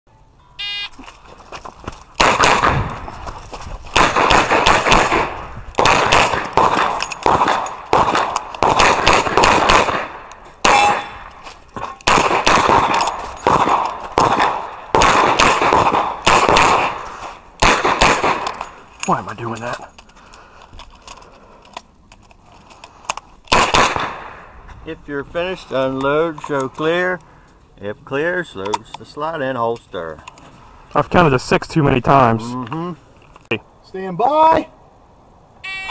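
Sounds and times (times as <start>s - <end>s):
shot timer beep: 0.6s - 0.9s
revolver gunshots: 2.2s - 3.0s, 4.0s - 11.3s, 12.0s - 18.6s, 23.5s - 24.5s.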